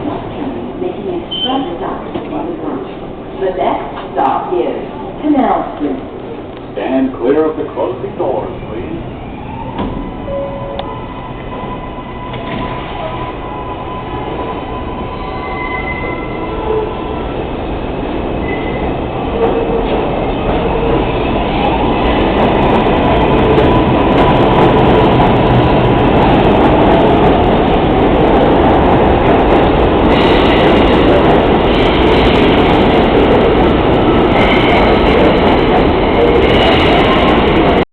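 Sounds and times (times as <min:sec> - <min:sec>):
wheel and track rumble: 0:18.0 - 0:37.8.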